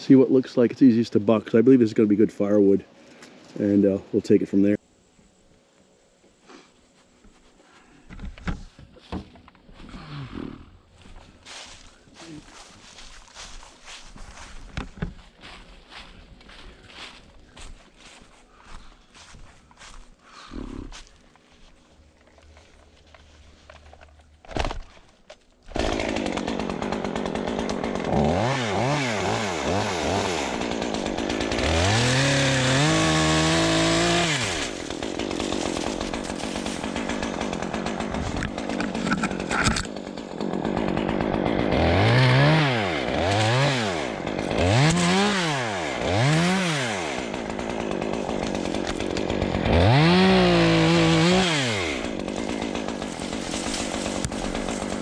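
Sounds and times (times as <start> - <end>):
chainsaw revving: 25.7 - 55.0.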